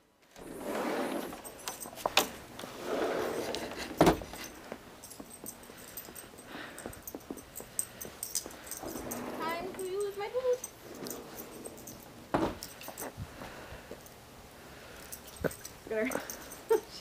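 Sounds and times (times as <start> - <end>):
metal pieces jingling: 4.3 - 13.2, 15.0 - 17.0.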